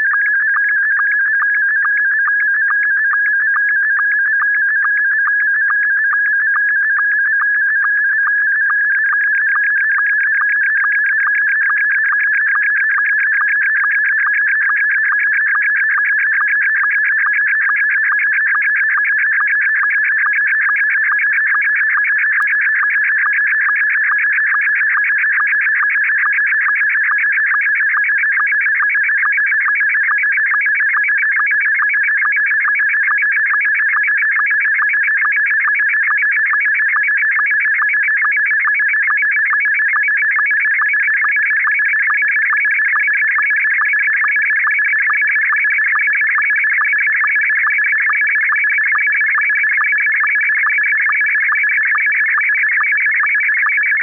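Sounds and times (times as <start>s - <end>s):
warbling sstv signal tones: 0.0s - 4.0s.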